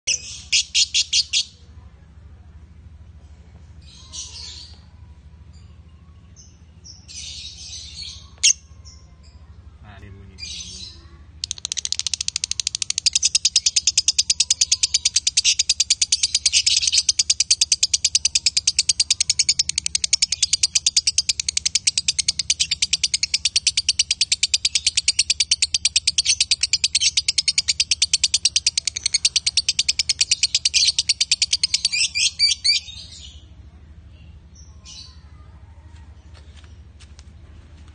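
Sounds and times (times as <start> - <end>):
lovebird chirping and chattering: 0.1 - 1.6, 5.5 - 9.5, 10.4 - 33.5.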